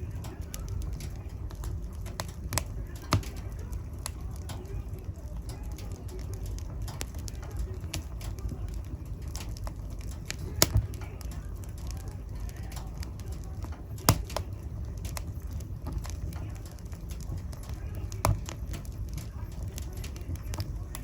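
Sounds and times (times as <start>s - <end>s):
low rumble of flames: 0.0s - 21.0s
wood fire crackling: 0.0s - 21.0s
sharp fire pop: 10.5s - 11.3s, 14.0s - 15.2s.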